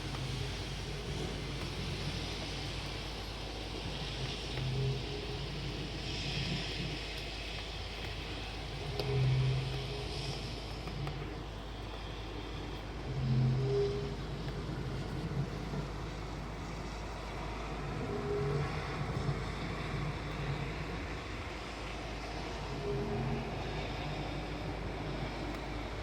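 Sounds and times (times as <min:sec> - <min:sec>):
steady low hum: 0:00.0 - 0:26.0
deeper swelling tone: 0:12.4 - 0:26.0.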